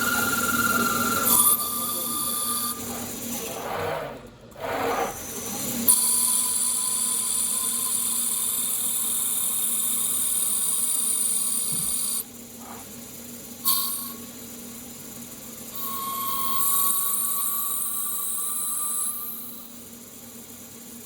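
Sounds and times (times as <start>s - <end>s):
lathe whining: 0.0s - 3.8s.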